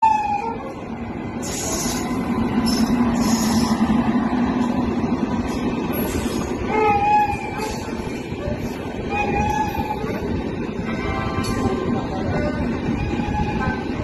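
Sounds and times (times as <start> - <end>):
train rumbling: 0.0 - 14.0
train horn: 6.7 - 10.2, 10.8 - 14.0.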